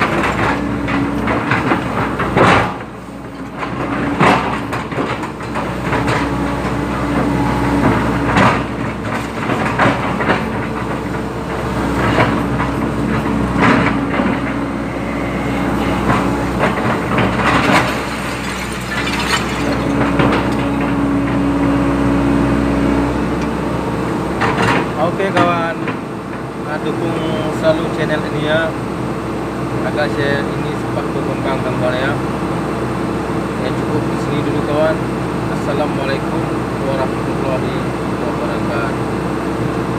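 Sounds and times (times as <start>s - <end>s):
excavator diesel engine running: 0.0s - 39.9s
metallic clanks and knocks: 16.0s - 21.4s.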